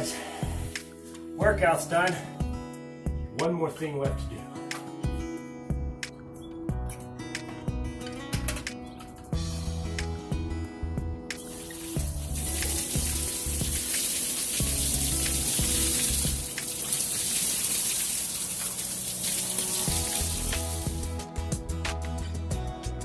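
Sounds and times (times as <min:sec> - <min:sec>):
running water hiss: 0:00.0 - 0:01.3, 0:11.4 - 0:21.1
background music with bass line: 0:00.0 - 0:14.0, 0:14.6 - 0:16.7, 0:19.4 - 0:23.0.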